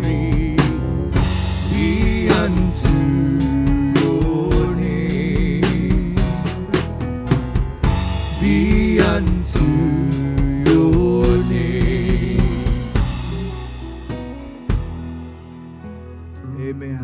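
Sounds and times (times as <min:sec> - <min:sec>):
drums steady beat: 0:00.0 - 0:15.6
live band playing: 0:00.0 - 0:15.9.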